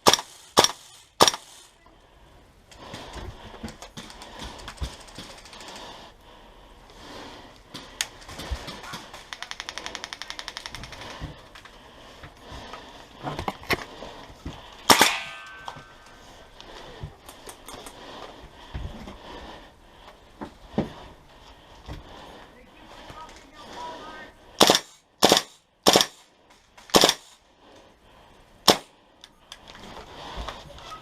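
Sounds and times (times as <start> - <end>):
airsoft gun shots: 0.0 - 1.5, 14.9 - 15.5, 24.6 - 26.2, 26.9 - 27.3, 28.7 - 28.9
full-auto gun burst: 0.0 - 1.6, 24.6 - 26.2, 26.9 - 27.4, 28.7 - 28.9.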